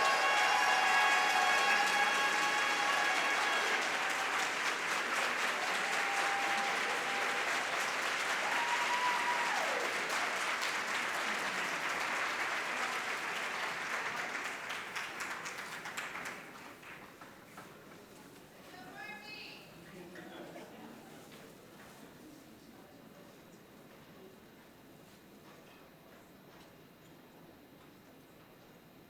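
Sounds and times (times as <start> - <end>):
audience applauding: 0.0 - 17.4.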